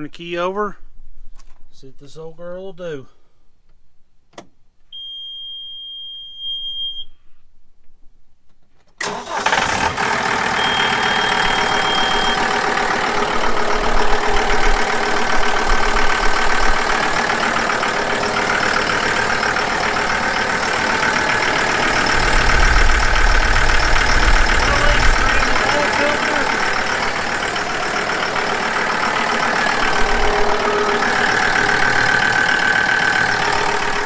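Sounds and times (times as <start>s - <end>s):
diesel tractor engine idling: 9.0s - 34.0s
short high tone: 20.3s - 34.0s.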